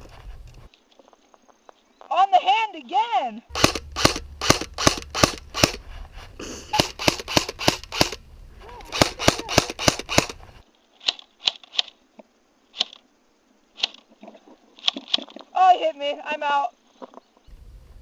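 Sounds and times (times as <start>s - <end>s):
airsoft guns firing: 3.5s - 5.8s, 6.7s - 8.2s, 8.8s - 10.4s.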